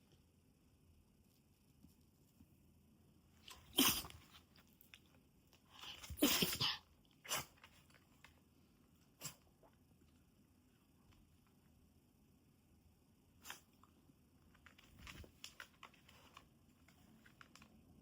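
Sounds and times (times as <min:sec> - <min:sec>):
dog sneezing: 0:03.5 - 0:04.3, 0:05.8 - 0:07.6.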